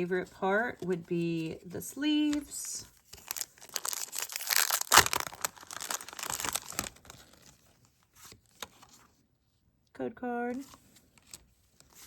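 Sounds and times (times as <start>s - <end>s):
foil wrapper tearing and crinkling: 3.1s - 7.6s.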